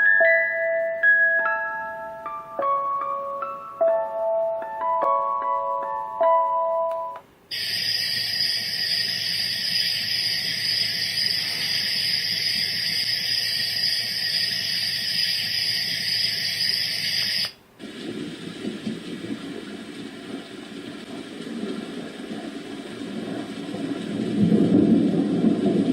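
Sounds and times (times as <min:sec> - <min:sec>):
white noise machine hiss: 0:07.3 - 0:25.9
low fluctuating noise: 0:07.5 - 0:25.9.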